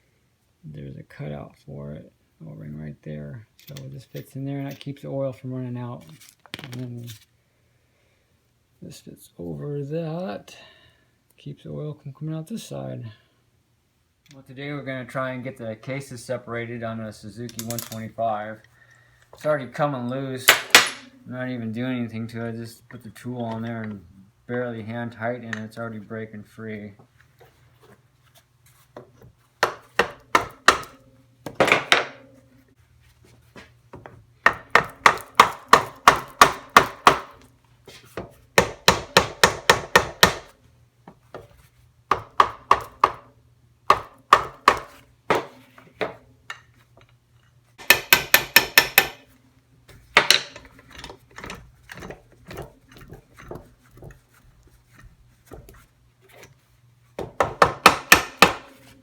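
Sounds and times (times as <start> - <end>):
faint steady hum: 0.0 - 59.0
rapid tool knocks on metal: 47.8 - 49.2.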